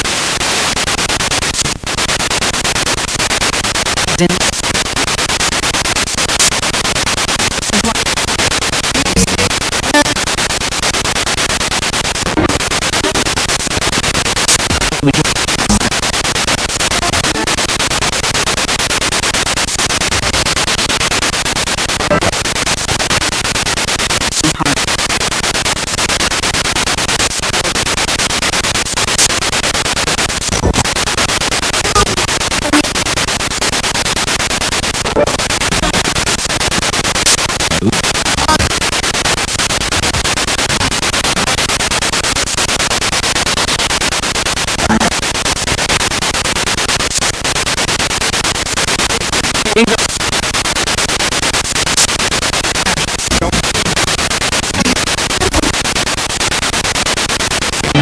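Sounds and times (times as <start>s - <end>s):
radio static hiss: 0.0s - 58.0s
snatches of broadcast voice: 3.8s - 5.4s, 7.4s - 10.6s, 11.5s - 17.7s, 19.6s - 23.1s, 24.1s - 26.0s, 28.8s - 33.4s, 34.6s - 41.6s, 44.7s - 45.7s, 48.9s - 50.2s, 51.7s - 56.2s, 57.6s - 58.0s.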